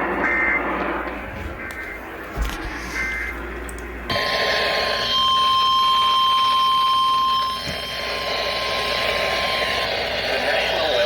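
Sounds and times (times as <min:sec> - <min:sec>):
steady alarm beep: 0:00.2 - 0:00.7, 0:02.8 - 0:03.4, 0:04.1 - 0:11.0
radio hiss: 0:08.2 - 0:11.0.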